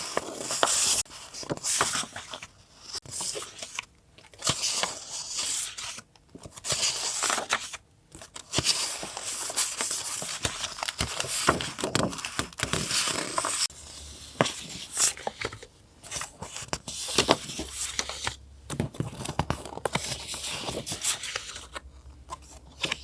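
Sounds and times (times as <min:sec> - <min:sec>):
paper rustling and tearing: 0:08.4 - 0:13.7.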